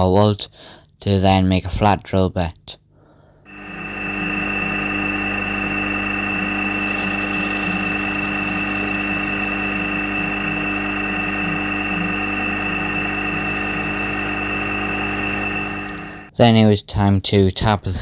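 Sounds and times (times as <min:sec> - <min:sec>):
drill motor whining: 0:03.5 - 0:16.3.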